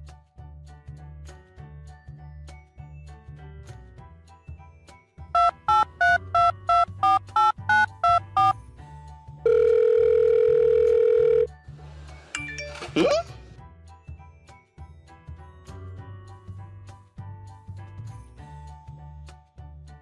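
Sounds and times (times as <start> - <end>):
background music: 0.0 - 20.0
steady phone tone: 5.4 - 8.6, 9.5 - 11.5
telephone keypad beeps: 5.4 - 8.6, 9.5 - 11.5.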